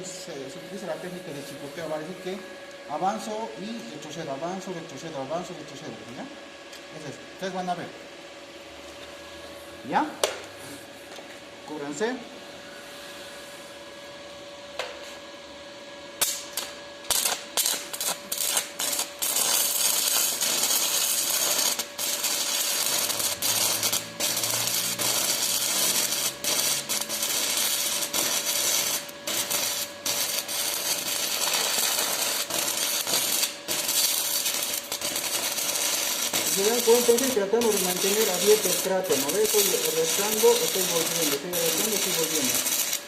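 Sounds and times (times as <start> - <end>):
welding arc crackling: 16.2 - 43.0.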